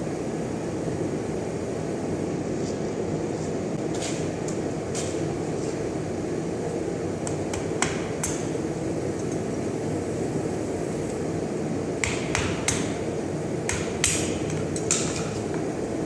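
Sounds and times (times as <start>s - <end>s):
steady mechanical hum: 0.0s - 16.0s
hammer tapping steel on anvil: 7.2s - 8.6s, 12.0s - 13.1s, 13.7s - 15.6s.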